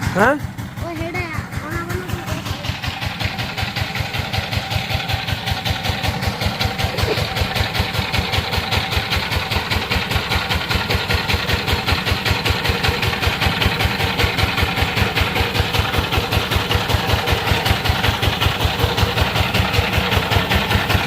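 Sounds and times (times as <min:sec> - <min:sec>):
diesel engine idling: 0:00.0 - 0:21.0.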